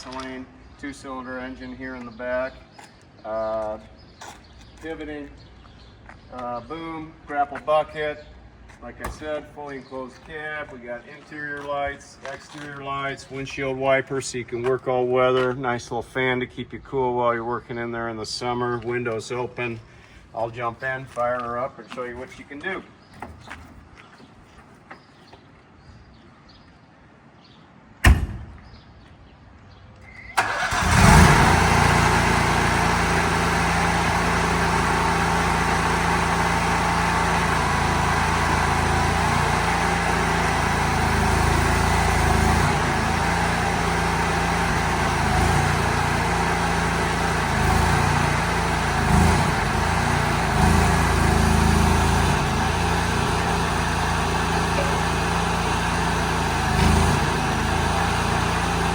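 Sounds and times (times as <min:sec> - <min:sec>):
sharp knock: 0:28.0 - 0:28.7
excavator engine starting and running: 0:30.0 - 0:58.9.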